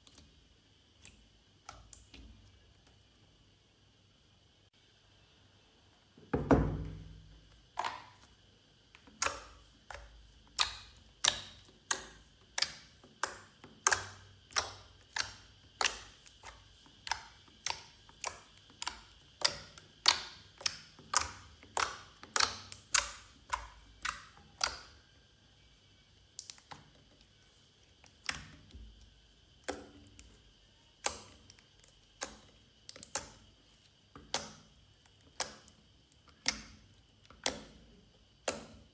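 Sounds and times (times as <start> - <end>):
slime clicking and popping: 9.0 - 24.9, 26.3 - 26.9, 31.0 - 33.5, 34.1 - 38.9.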